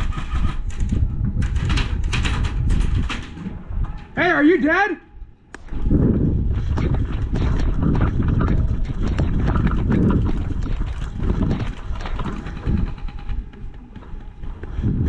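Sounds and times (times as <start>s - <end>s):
low rumbling wind: 0.0s - 15.0s
clicks and knocks: 0.1s - 4.2s
microphone handling noise: 5.5s - 15.0s.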